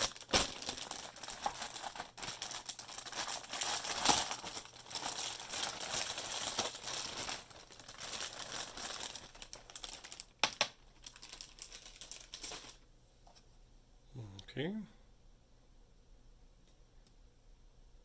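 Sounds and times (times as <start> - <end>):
packaging crinkling and rustling: 0.0 - 12.8.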